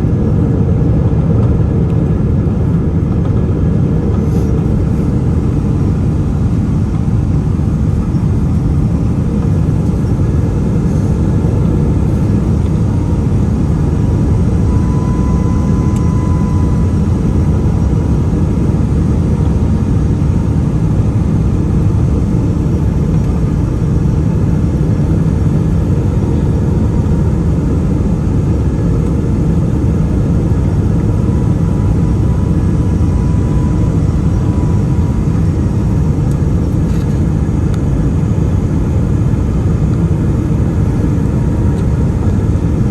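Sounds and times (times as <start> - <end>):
jet engines rumbling: 0.0 - 42.9
faint thin whine: 4.1 - 18.0, 30.6 - 37.5.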